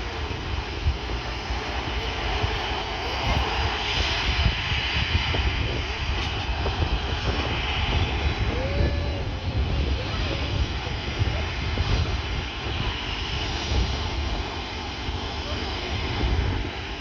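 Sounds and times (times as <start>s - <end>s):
jet engines rumbling with hiss: 0.0s - 17.0s.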